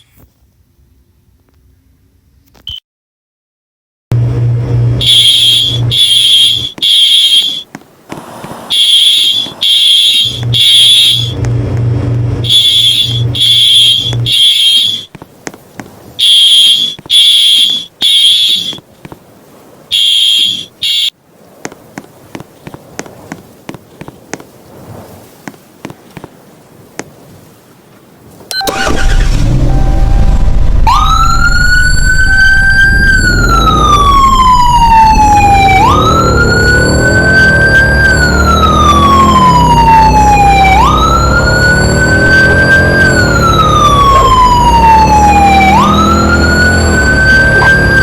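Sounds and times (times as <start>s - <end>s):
fire alarm horn blasts: 5.0s - 7.6s, 8.7s - 11.4s, 12.4s - 15.1s, 16.2s - 18.8s, 19.9s - 21.1s.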